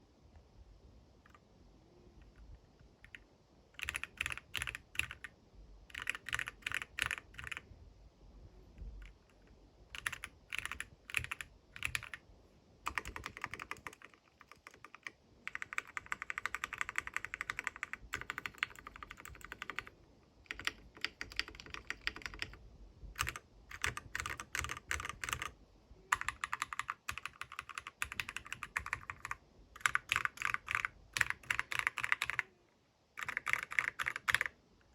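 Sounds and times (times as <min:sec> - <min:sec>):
mechanical keyboard typing: 0:03.0 - 0:03.2, 0:03.8 - 0:05.3, 0:05.9 - 0:07.6, 0:09.0 - 0:12.2, 0:12.8 - 0:19.9, 0:20.5 - 0:22.6, 0:23.2 - 0:25.5, 0:26.1 - 0:32.6, 0:33.2 - 0:34.6.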